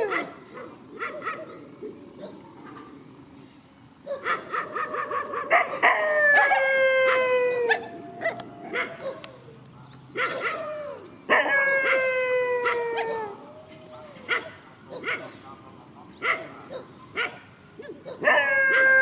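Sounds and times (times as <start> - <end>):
dog yelping: 0.0 - 2.9, 4.0 - 9.6, 10.2 - 15.3, 16.2 - 19.0
dog howling: 4.5 - 9.6, 10.2 - 14.4, 18.1 - 19.0.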